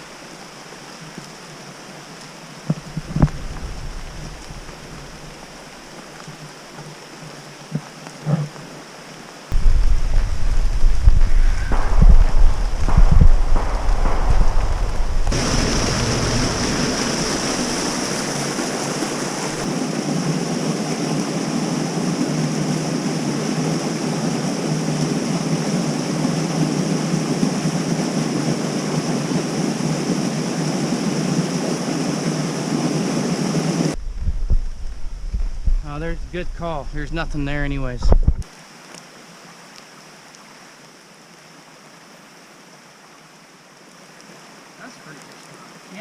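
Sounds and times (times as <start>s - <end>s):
river water rushing: 0.0s - 34.2s
wind buffeting microphone: 2.9s - 5.3s, 9.5s - 19.7s, 33.9s - 38.4s.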